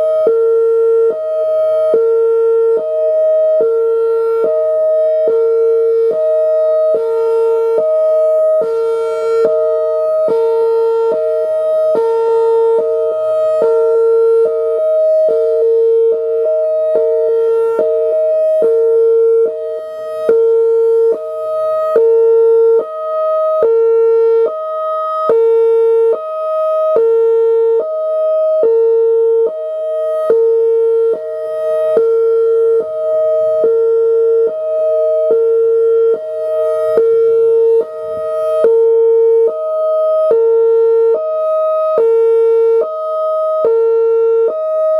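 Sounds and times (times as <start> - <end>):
high-low warning siren: 0.0 - 44.9.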